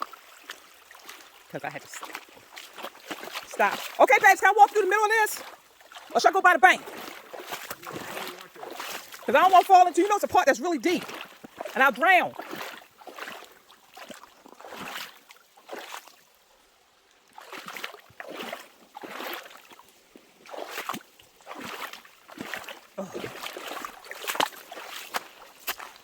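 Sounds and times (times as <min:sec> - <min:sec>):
footsteps wading through water: 0:00.0 - 0:26.0
water sloshing and splashing: 0:00.0 - 0:26.0.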